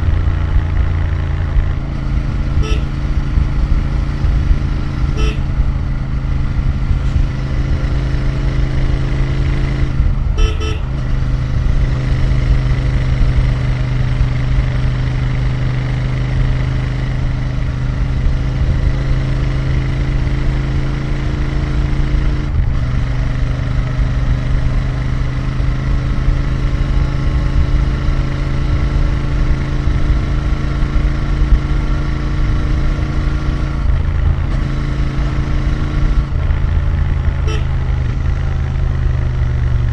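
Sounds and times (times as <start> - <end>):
motorcycle engine cruising: 0.0 - 39.9
horn toots: 2.5 - 3.2, 5.0 - 5.7, 10.3 - 11.1, 37.4 - 38.2.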